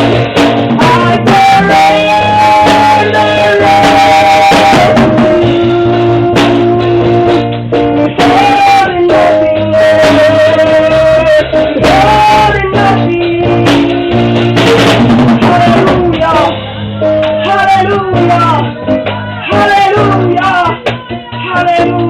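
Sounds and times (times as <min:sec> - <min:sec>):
band playing worship music: 0:00.0 - 0:22.0.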